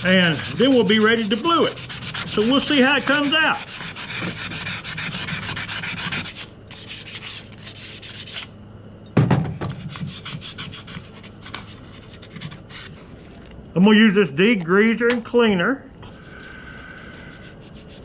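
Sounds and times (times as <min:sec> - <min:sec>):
hand sanding on steel: 0:00.0 - 0:08.5, 0:09.8 - 0:11.8, 0:16.1 - 0:18.0
thump: 0:09.2 - 0:09.7.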